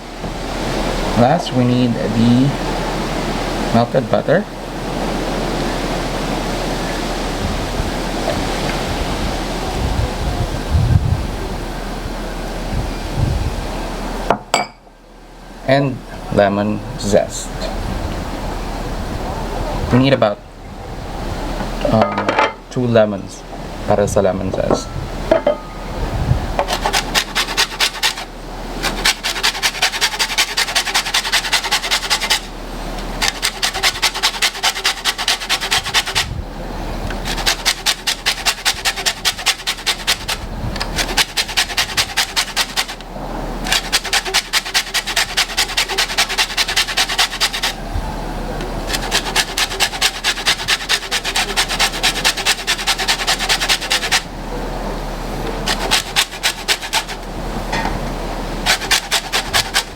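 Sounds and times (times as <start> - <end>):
lemon rasping on grater: 26.6 - 32.6, 33.2 - 36.4, 37.2 - 43.0, 43.6 - 47.8, 48.9 - 54.3, 55.6 - 57.3, 58.6 - 59.9.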